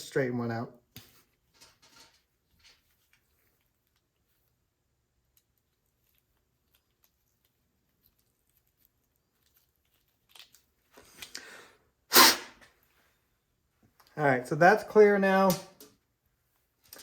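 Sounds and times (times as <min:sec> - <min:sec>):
faint small clicks and scrapes: 0:00.9 - 0:04.6, 0:05.2 - 0:11.4, 0:16.6 - 0:17.0.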